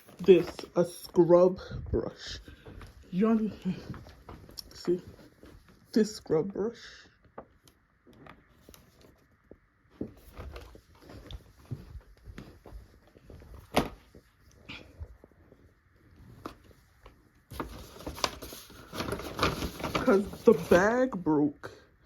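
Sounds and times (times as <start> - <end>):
gift bag rustling: 0.0 - 6.2, 17.5 - 21.2.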